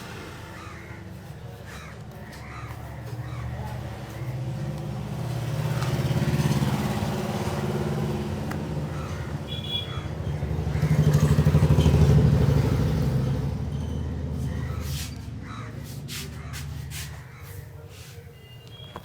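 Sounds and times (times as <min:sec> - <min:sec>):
vehicle engine passing by: 0:03.0 - 0:17.3.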